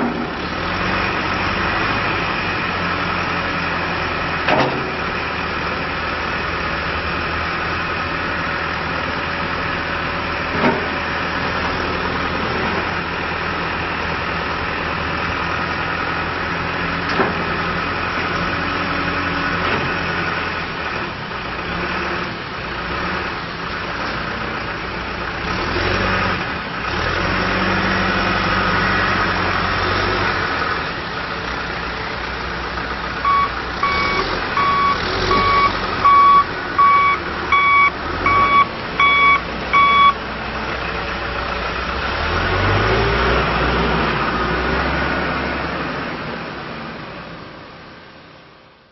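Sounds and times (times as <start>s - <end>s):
diesel engine running: 0.0s - 48.9s
reversing alarm beeping: 33.2s - 40.2s.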